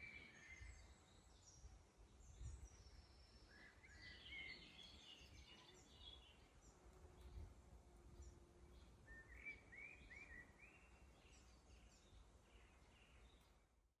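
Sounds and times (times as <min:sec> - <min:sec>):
faint bird chirps: 0:00.0 - 0:07.4, 0:08.2 - 0:13.7
bird singing a phrase: 0:02.4 - 0:06.5.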